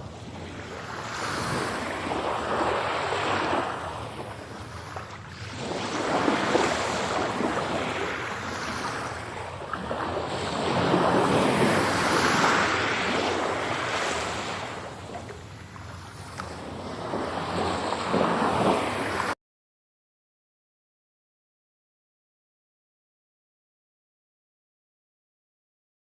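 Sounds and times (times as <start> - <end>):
ocean surf washing: 0.0 - 19.4.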